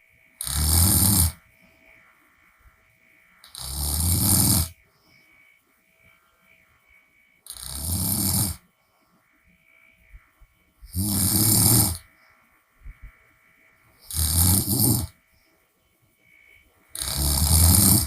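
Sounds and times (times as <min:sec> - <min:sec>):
woman snoring: 0:00.4 - 0:01.4, 0:03.5 - 0:04.8, 0:07.5 - 0:08.6, 0:10.9 - 0:12.1, 0:14.0 - 0:15.2, 0:16.9 - 0:18.0.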